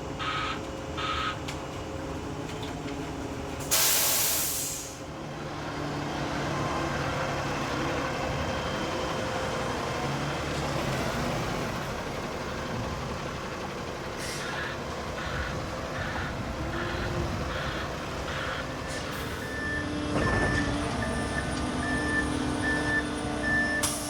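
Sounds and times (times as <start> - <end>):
diesel engine running: 0.0 - 24.0
backup alarm beeping: 0.2 - 1.4, 16.0 - 24.0.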